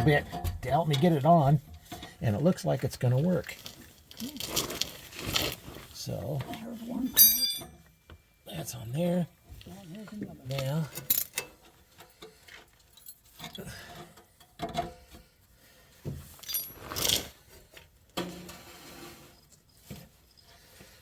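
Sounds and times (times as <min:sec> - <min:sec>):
metal pipe clinking and scraping: 0:03.4 - 0:08.3, 0:10.4 - 0:15.2, 0:16.2 - 0:21.0.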